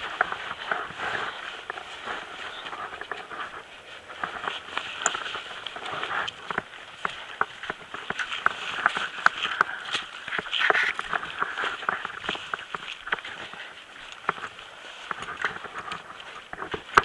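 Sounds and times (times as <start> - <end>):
footsteps crunching on rough ground: 0.0 - 17.0
rustling: 0.0 - 17.0.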